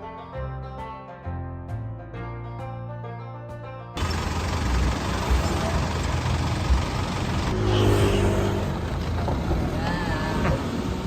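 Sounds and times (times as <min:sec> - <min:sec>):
vehicle engine revving: 0:04.0 - 0:11.0.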